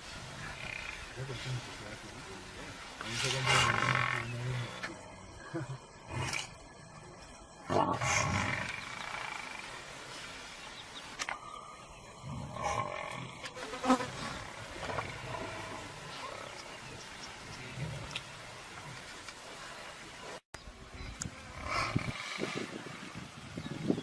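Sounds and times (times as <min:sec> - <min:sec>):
lions growling and snarling: 0:03.0 - 0:05.0, 0:06.0 - 0:06.7, 0:07.6 - 0:09.9, 0:12.2 - 0:19.1, 0:21.5 - 0:22.9.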